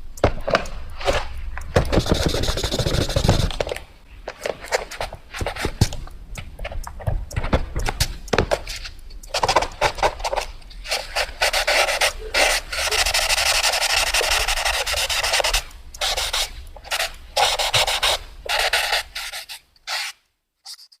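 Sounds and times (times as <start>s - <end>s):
pencil scratching on paper: 1.9s - 3.6s, 10.2s - 21.0s.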